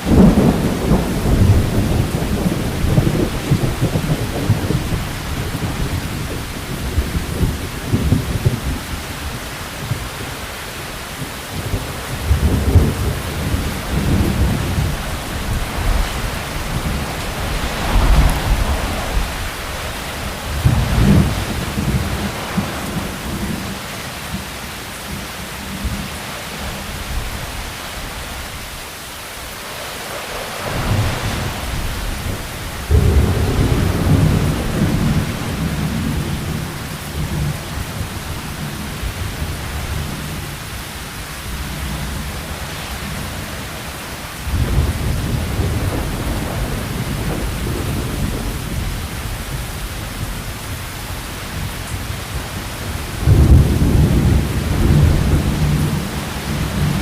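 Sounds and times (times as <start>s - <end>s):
thunder rumbling: 0.0s - 10.2s, 11.3s - 24.5s, 30.3s - 40.7s, 44.4s - 50.4s, 51.5s - 57.0s
heavy rain falling: 0.0s - 57.0s.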